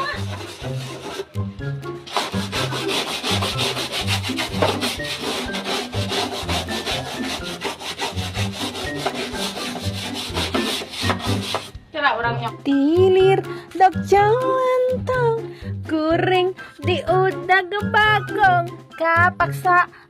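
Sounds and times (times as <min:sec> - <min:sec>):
upbeat background music: 0:00.0 - 0:20.0.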